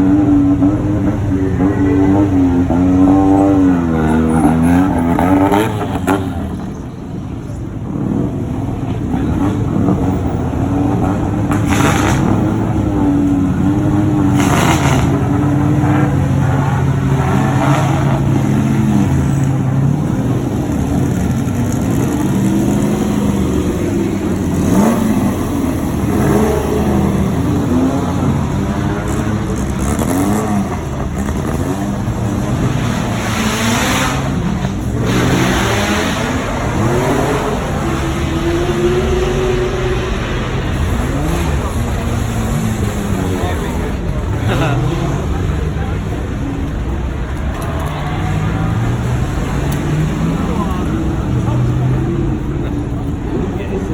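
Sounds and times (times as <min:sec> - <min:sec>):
car engine revving: 0:00.0 - 0:53.9.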